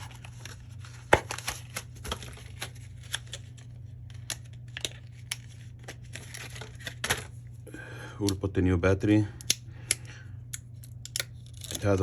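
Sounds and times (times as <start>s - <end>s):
steady low hum: 0.0s - 12.0s
tools clicking and scratching: 10.5s - 12.0s.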